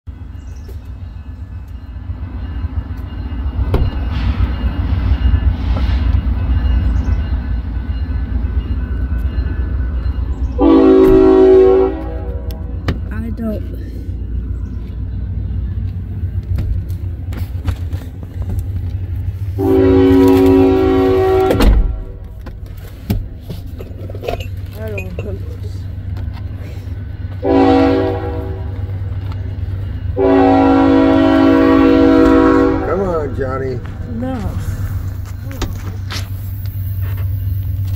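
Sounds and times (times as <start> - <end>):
freight train rumbling: 0.0 - 37.9
locomotive horn blast: 10.6 - 12.8, 19.6 - 22.4, 27.4 - 28.9, 30.2 - 33.4.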